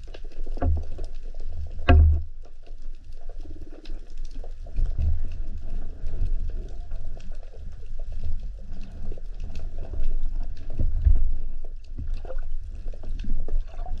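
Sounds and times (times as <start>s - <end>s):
water sloshing and rushing: 0.0s - 14.0s
dull thumps: 1.8s - 2.3s.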